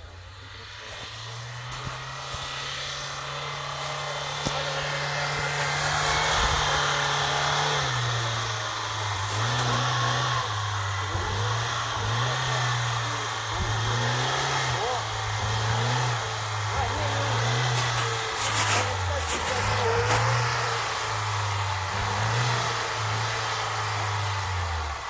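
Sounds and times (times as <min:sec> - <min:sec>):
car engine revving under load: 0:00.0 - 0:25.0.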